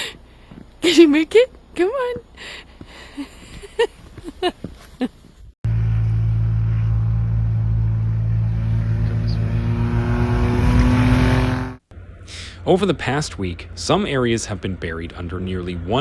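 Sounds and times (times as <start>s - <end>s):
vehicle engine running hard: 5.7s - 16.0s.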